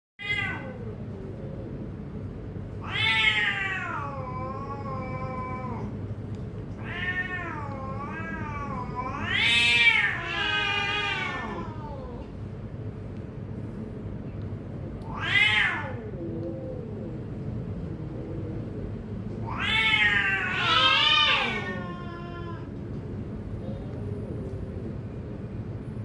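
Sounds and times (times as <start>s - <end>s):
cats yowling: 0.2s - 1.7s, 2.8s - 6.0s, 6.7s - 12.4s, 15.0s - 17.2s, 19.4s - 22.8s.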